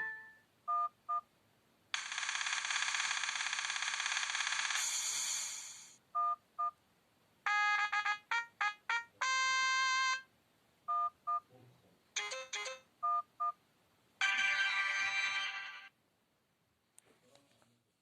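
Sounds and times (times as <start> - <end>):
mobile phone electronic beeps and chimes: 0.0 - 1.3, 6.2 - 6.8, 7.5 - 10.3, 12.2 - 13.6.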